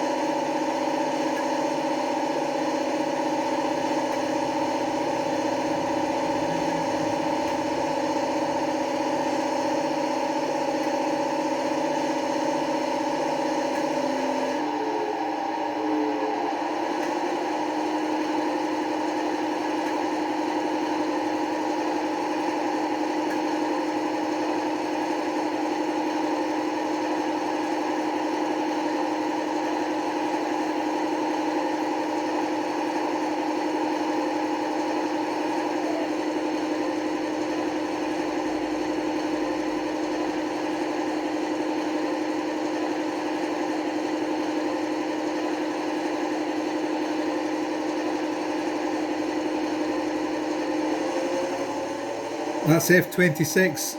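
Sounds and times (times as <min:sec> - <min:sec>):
diesel engine sound from small speaker: 0:00.0 - 0:45.6, 0:48.6 - 0:53.9.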